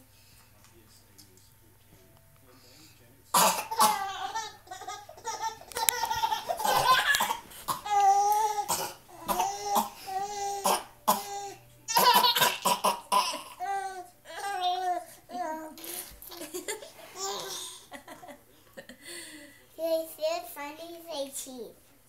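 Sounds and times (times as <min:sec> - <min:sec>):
person fake coughing: 0:03.4 - 0:04.4, 0:06.6 - 0:13.6
child laughing: 0:03.8 - 0:08.6, 0:13.9 - 0:18.4.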